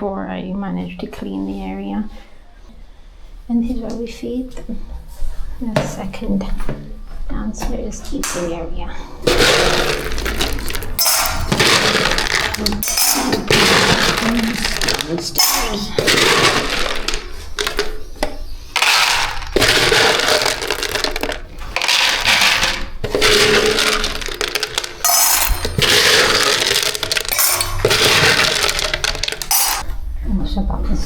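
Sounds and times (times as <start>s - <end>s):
kibble rattling into metal bowls: 9.2s - 29.8s.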